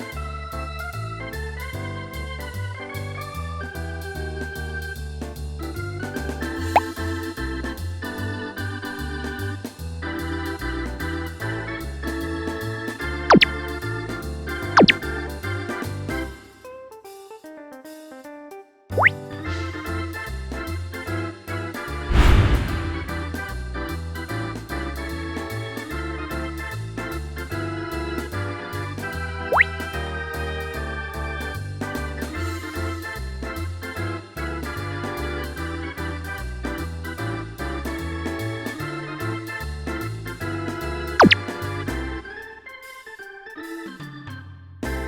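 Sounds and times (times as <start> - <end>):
upbeat keyboard music: 0.0 - 21.6, 24.5 - 45.0
quick rising whistle: 13.3 - 13.5, 14.8 - 15.0, 22.1 - 23.4, 41.2 - 41.4
falling whistle sound effect: 14.8 - 15.0, 41.2 - 41.4
loud crash-like noise burst: 22.1 - 23.6.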